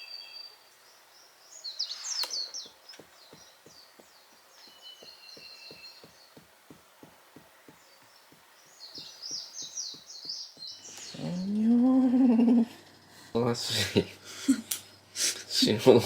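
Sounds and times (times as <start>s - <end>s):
small birds chirping: 0.0s - 16.0s
faint steady ticking: 2.6s - 11.3s.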